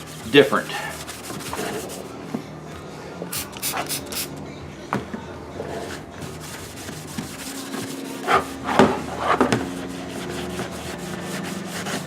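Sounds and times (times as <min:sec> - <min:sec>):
scrub pad rubbing plastic: 0:00.0 - 0:02.1, 0:05.7 - 0:12.0.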